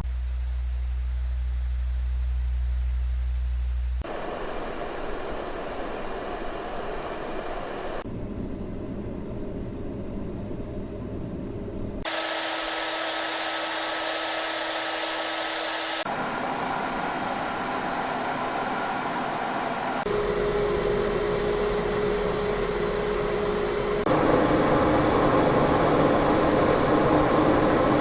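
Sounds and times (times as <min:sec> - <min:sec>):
low hum with faint tones: 0:00.0 - 0:12.1, 0:16.0 - 0:28.0
bright hiss with thin whine: 0:03.7 - 0:08.0
rushing airflow drone: 0:04.0 - 0:28.0.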